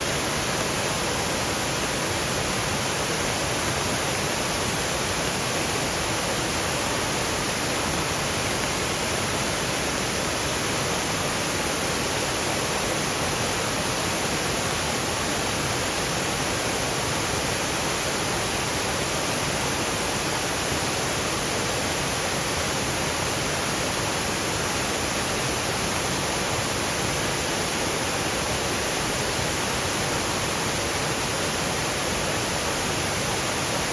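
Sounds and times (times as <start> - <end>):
rain falling through trees: 0.0 - 33.9
waterfall rushing over rocks: 0.0 - 33.9.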